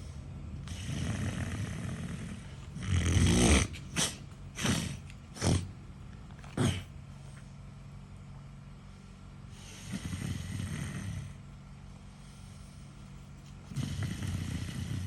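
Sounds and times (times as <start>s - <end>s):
person snoring and snorting: 0.7s - 5.7s, 6.5s - 6.9s, 9.6s - 11.4s, 13.7s - 15.0s.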